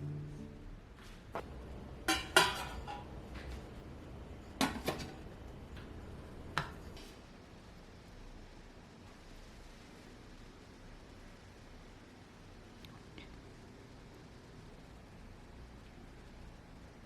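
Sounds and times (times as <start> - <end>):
dishes and utensils clinking: 1.4 - 7.1.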